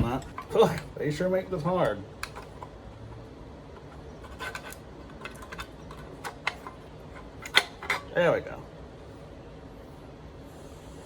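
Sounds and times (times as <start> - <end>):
plastic housing clicks and scrapes: 2.2 - 2.8, 3.7 - 8.1.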